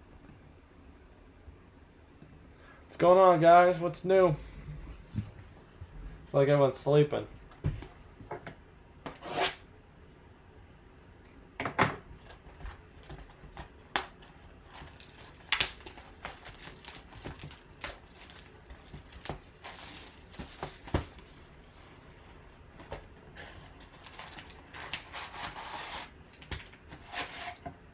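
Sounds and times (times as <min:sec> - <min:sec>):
crinkling packaging rustles: 0:12.2 - 0:27.6.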